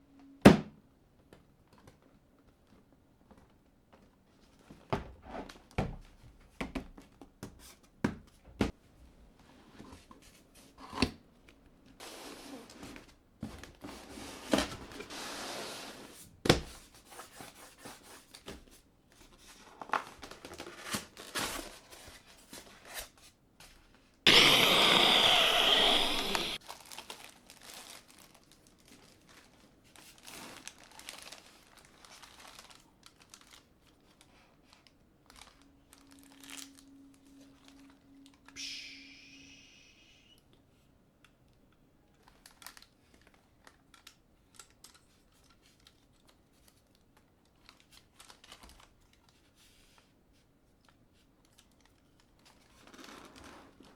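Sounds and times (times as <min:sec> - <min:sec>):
plastic and paper crinkling: 0:26.6 - 0:38.0, 0:42.1 - 0:53.9.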